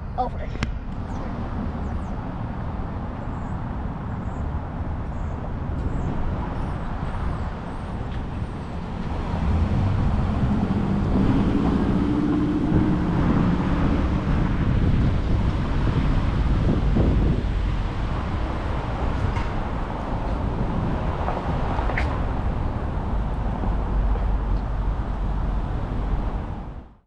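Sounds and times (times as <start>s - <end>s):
low engine hum: 0.0s - 27.0s
road noise rumble: 0.0s - 27.0s.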